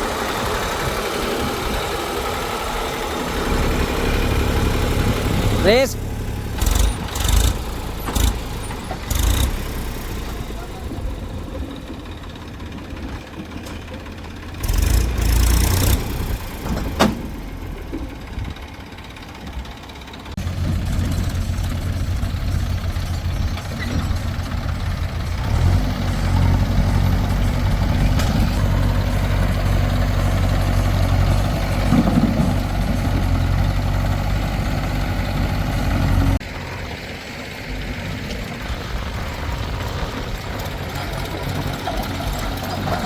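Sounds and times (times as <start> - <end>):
heavy diesel engine running: 0.0 - 43.0.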